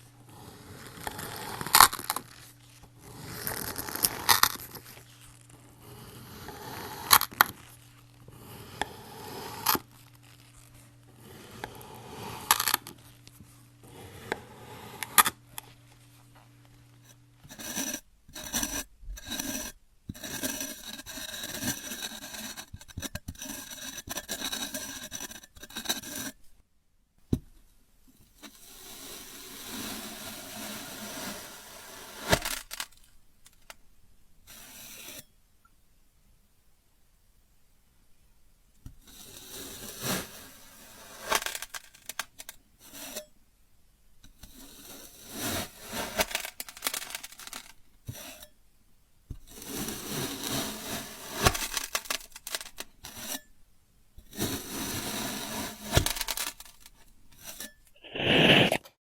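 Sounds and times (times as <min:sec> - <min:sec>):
crackling crunching scrapes: 0:00.0 - 0:26.4, 0:28.5 - 0:33.8, 0:39.1 - 0:43.3, 0:44.4 - 0:48.6, 0:49.4 - 0:53.5, 0:54.3 - 0:59.0
sand scraping: 0:17.0 - 0:26.3, 0:28.5 - 0:33.6, 0:39.1 - 0:43.3, 0:44.6 - 0:48.5, 0:49.5 - 0:53.5, 0:54.3 - 0:58.9.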